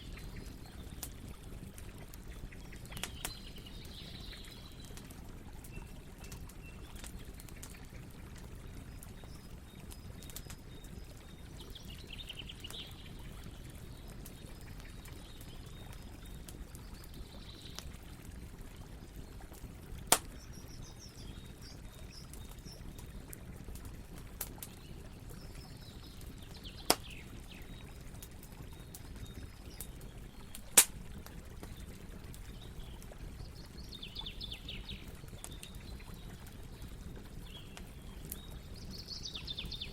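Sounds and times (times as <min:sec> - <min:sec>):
campfire burning and crackling: 0:00.0 - 0:39.9
sharp pops of fire: 0:20.1 - 0:20.4, 0:26.8 - 0:27.2, 0:30.5 - 0:31.2.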